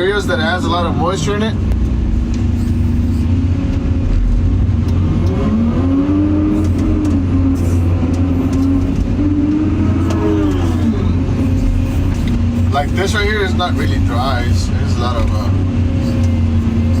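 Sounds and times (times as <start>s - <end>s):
excavator diesel engine under load: 0.0s - 17.0s.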